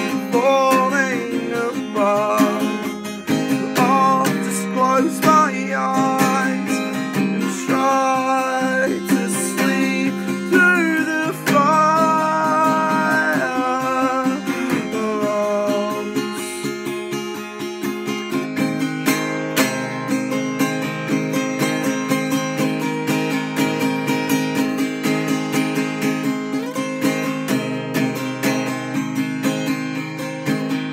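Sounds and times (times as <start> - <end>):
acoustic guitar strumming: 0.0 - 30.9
gliding guitar melody: 0.0 - 30.9.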